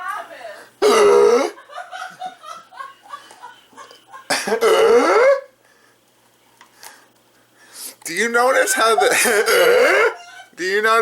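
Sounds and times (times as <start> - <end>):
man's croaking hiccup burp: 0.8 - 1.6, 4.3 - 5.5, 9.2 - 10.2.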